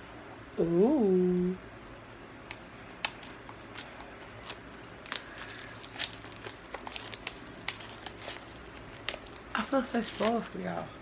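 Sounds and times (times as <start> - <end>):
packaging crinkling: 3.0 - 11.0.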